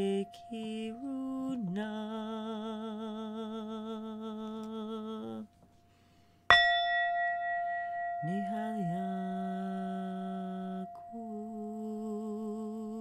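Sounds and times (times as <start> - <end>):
singing bowl ringing: 0.0 - 5.5, 6.3 - 13.0
woman humming: 0.0 - 5.5, 8.2 - 13.0
woman singing with vibrato: 0.0 - 5.5, 8.2 - 13.0.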